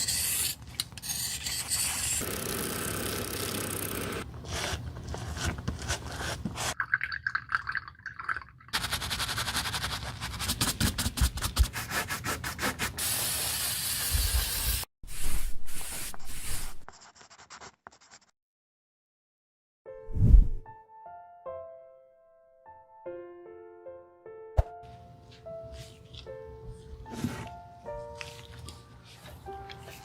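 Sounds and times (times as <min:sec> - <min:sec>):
sanding and scraping leather: 0:08.8 - 0:18.2.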